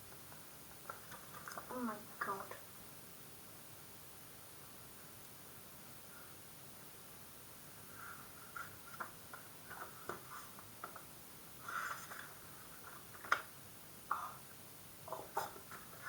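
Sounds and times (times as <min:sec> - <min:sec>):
card rustle: 0:00.8 - 0:01.7, 0:08.4 - 0:11.1, 0:11.7 - 0:13.5
cards sliding and tapping: 0:08.5 - 0:11.0.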